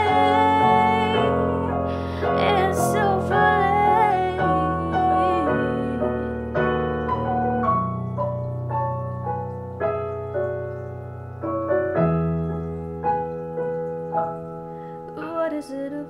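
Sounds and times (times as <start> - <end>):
slow piano chords: 0.0 - 16.0.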